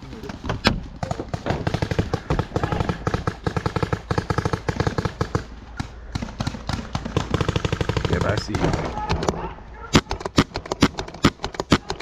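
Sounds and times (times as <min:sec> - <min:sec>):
paintball markers firing: 0:01.0 - 0:12.0.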